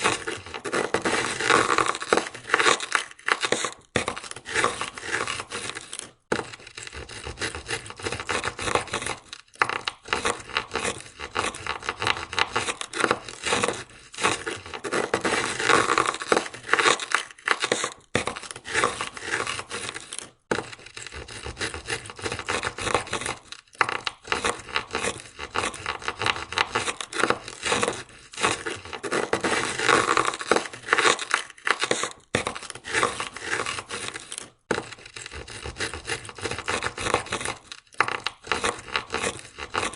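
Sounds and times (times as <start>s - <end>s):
ice scraper scraping car window: 0.0s - 39.9s.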